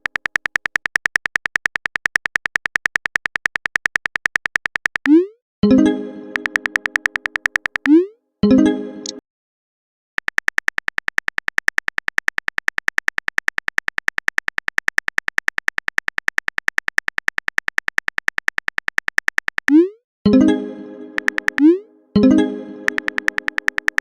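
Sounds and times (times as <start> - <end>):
rapid keyboard typing clicks: 0.0 - 5.2, 6.3 - 8.0, 10.2 - 19.8, 21.2 - 21.7, 22.8 - 24.0.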